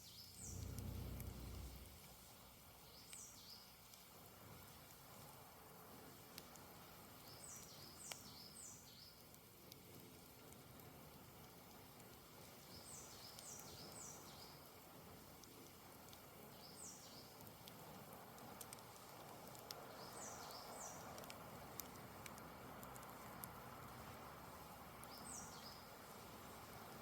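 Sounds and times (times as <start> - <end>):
bird chirping: 0.0 - 2.0, 25.0 - 25.9
steady hiss: 0.0 - 27.0
campfire crackling: 0.1 - 27.0.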